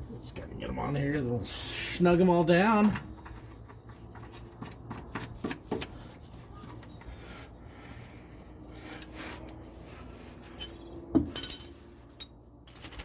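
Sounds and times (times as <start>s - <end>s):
light metal clicks and scraping: 10.5s - 13.0s
sharp metallic clank: 10.6s - 11.8s.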